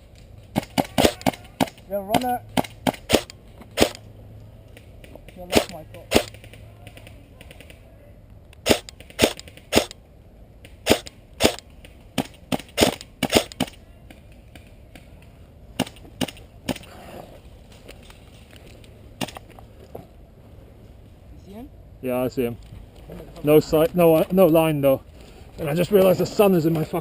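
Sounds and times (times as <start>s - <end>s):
airsoft rifle shots: 0.5s - 4.0s, 5.4s - 7.7s, 8.6s - 10.0s, 10.7s - 13.8s.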